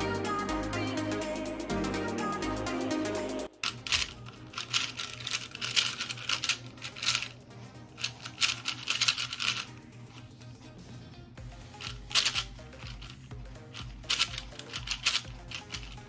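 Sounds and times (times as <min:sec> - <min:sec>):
puzzle cube clicking turns: 0:03.6 - 0:07.4, 0:08.0 - 0:10.3, 0:11.8 - 0:16.0.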